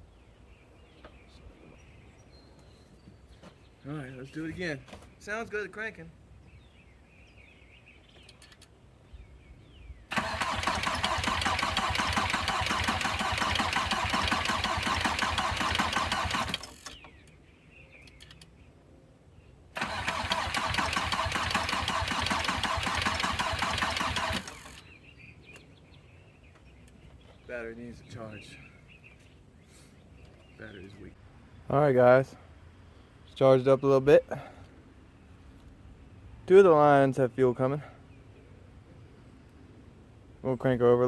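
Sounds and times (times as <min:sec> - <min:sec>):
diesel engine cranking: 0:10.1 - 0:17.0, 0:19.8 - 0:25.0.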